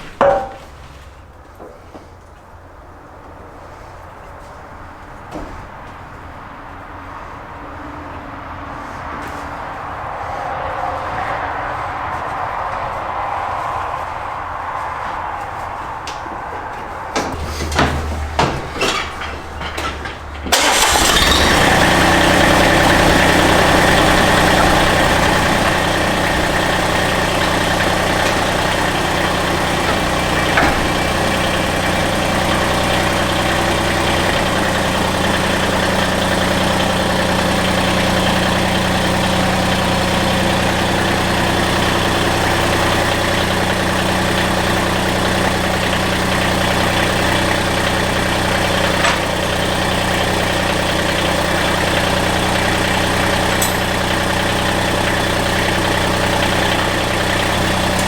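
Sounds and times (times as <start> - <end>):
lawn tractor engine running: 17.3 - 58.0
starter motor cranking: 17.3 - 58.0.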